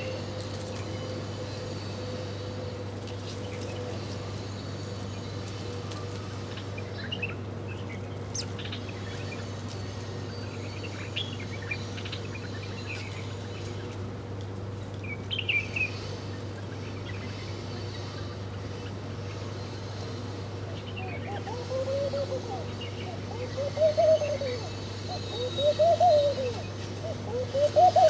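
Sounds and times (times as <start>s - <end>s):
steady low hum: 15.0s - 28.0s
small birds chirping: 20.8s - 28.0s.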